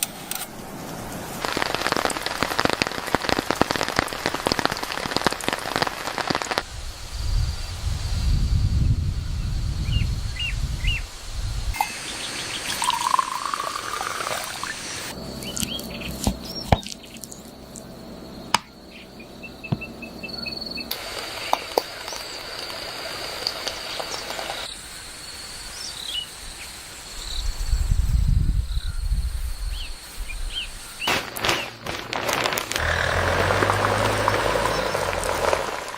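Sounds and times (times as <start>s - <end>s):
bird chirps: 11.8s - 13.8s, 14.6s - 18.0s
insect-like trill: 11.8s - 26.1s.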